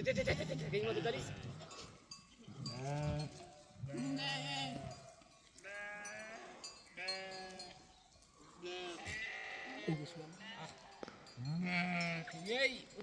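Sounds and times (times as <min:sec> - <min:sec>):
sheep bleating: 0:00.0 - 0:01.9, 0:02.7 - 0:07.8, 0:08.6 - 0:10.7, 0:11.6 - 0:12.4.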